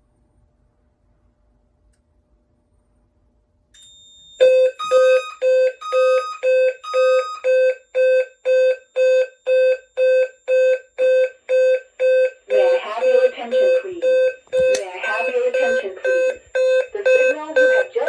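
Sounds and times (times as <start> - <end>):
pulsed alarm tone: 3.8 - 18.0
higher alarm tone: 12.1 - 18.0.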